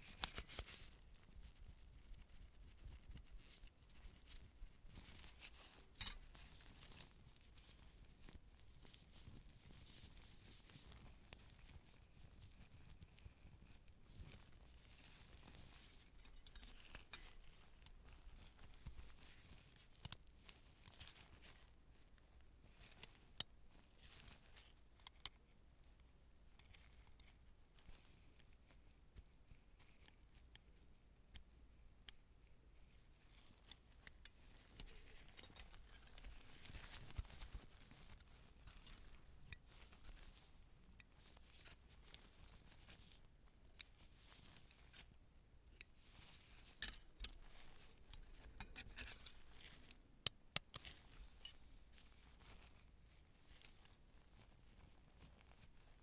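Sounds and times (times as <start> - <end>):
soft rustle: 0.0 - 56.0
metal surgical instruments clicking: 46.8 - 47.5.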